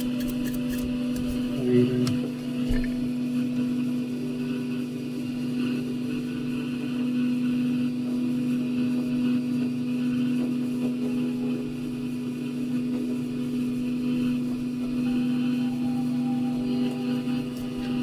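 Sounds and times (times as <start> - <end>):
small electric motor humming: 0.0 - 18.0.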